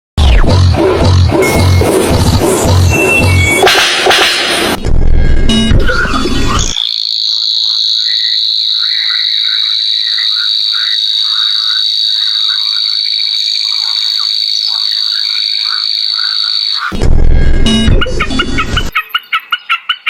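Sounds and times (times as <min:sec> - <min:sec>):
high-pitched buzzing trill: 0:00.2 - 0:19.0
animal chirping calls: 0:06.7 - 0:17.0, 0:18.9 - 0:20.0.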